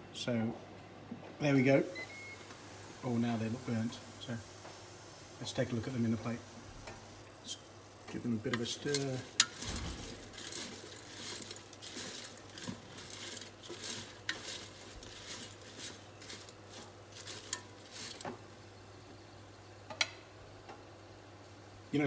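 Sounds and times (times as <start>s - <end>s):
utensil scraping chips in basket: 8.2s - 18.7s.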